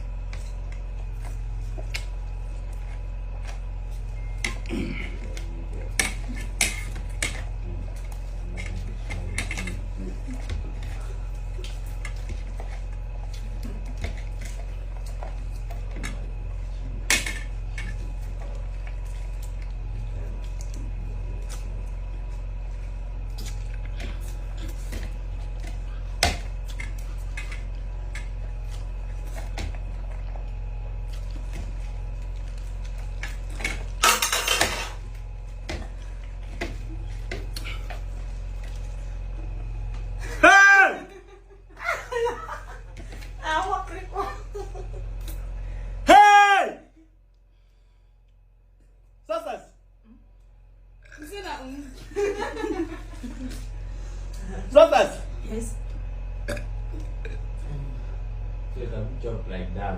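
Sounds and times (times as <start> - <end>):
steady low hum: 0.0 - 59.9
utensils clinking against bowls: 33.2 - 35.0.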